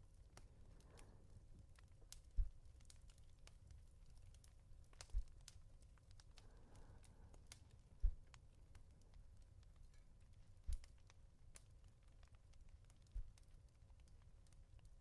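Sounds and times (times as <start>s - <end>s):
fireplace crackle: 0.0s - 15.0s
faint breath: 0.5s - 1.4s, 6.4s - 8.2s
soft pats on a pillow: 2.0s - 2.9s, 4.9s - 5.5s, 8.0s - 8.4s, 10.7s - 11.0s.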